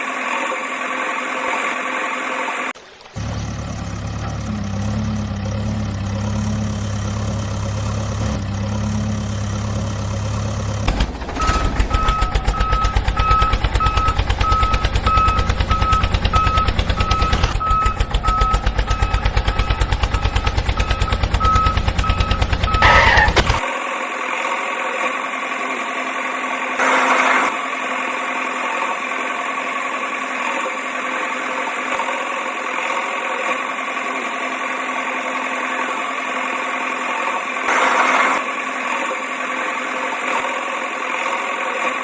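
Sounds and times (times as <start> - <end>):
vehicle motor running: 0.0 - 42.0
reversing alarm beeps: 11.3 - 23.4.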